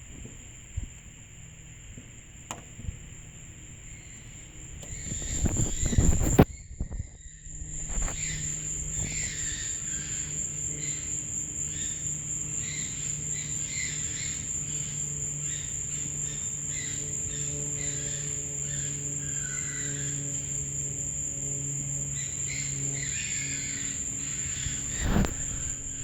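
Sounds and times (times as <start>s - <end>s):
night insects trilling: 0.0s - 26.0s
microphone handling rumble: 1.8s - 9.8s, 24.6s - 26.0s.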